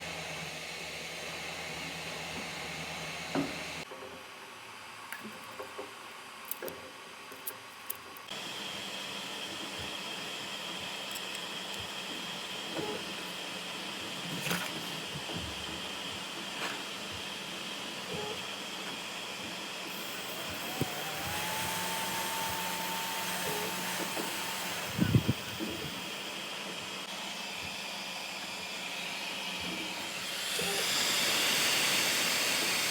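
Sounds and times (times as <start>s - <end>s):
small motor spinning fan: 8.3s - 32.9s
motor whine: 17.1s - 32.9s.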